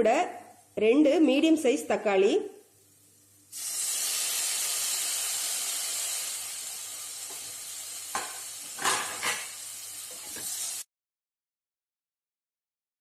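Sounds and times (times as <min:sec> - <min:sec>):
tomatoes sizzling in oil: 0:03.2 - 0:10.9
spoon scraping a pan: 0:08.1 - 0:10.7.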